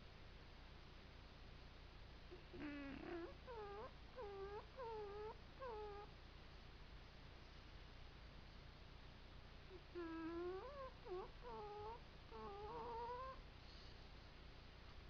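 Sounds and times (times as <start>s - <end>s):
pet whimpering: 2.3s - 6.1s, 9.7s - 13.4s.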